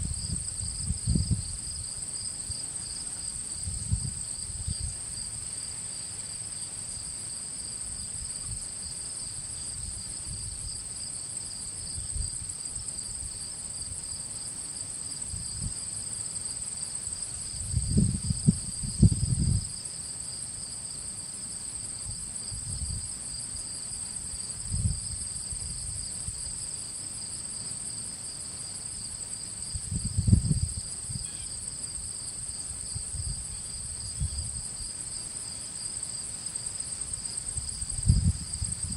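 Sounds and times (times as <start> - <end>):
wind rumbling on microphone: 0.0 - 2.6, 3.5 - 5.2, 9.8 - 10.8, 17.5 - 19.8, 22.5 - 23.1, 24.6 - 26.5, 29.6 - 31.3, 32.8 - 34.9, 37.5 - 38.9
insects droning: 0.0 - 38.9.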